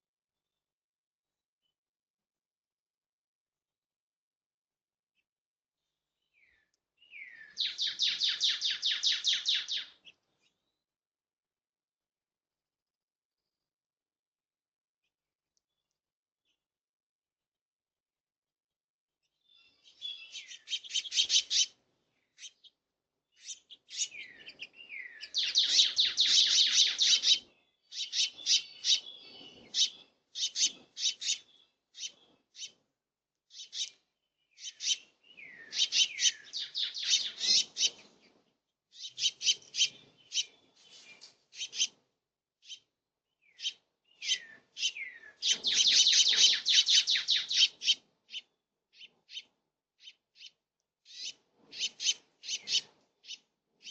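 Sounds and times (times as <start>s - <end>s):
birds chattering: 6.4s - 10.2s, 19.6s - 22.8s, 23.4s - 32.8s, 33.5s - 38.3s, 39.0s - 42.0s, 43.5s - 49.5s, 51.1s - 53.9s.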